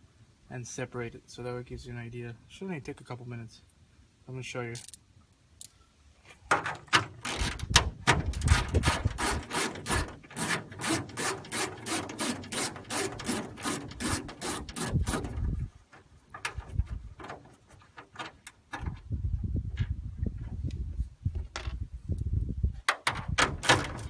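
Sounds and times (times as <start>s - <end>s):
hand tool scraping strokes: 8.5s - 15.5s.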